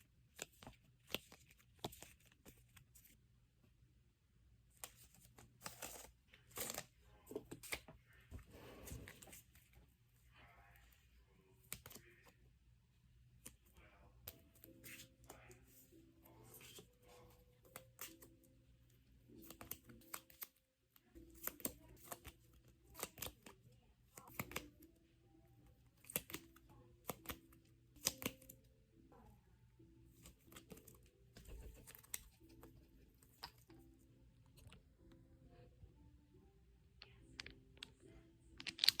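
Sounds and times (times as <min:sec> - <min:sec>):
faint room hum: 0:00.0 - 0:39.0.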